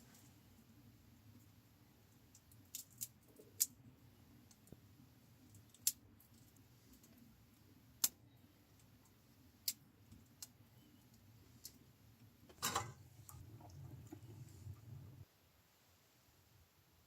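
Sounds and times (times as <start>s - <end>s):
faint low rumble: 10.7s - 15.6s.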